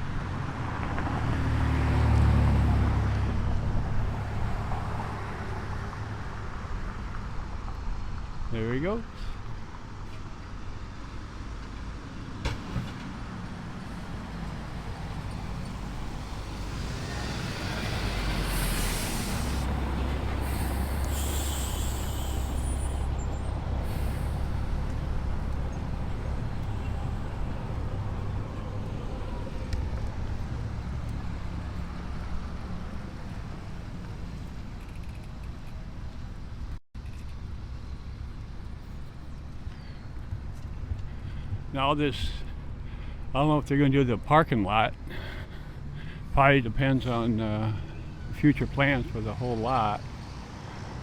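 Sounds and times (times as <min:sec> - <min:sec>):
diesel truck engine rumbling: 0:11.0 - 0:51.0
air brakes hissing: 0:13.9 - 0:28.4.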